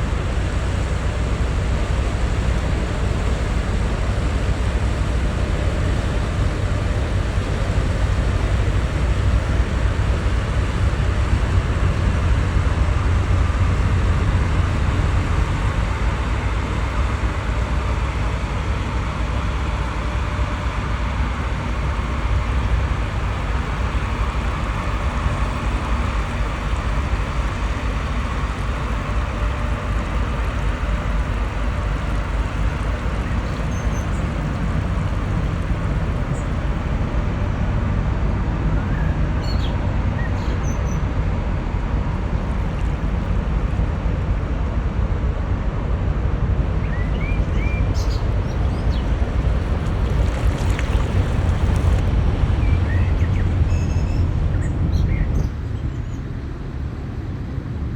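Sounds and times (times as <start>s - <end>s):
ship engine rumble: 0.0s - 57.9s.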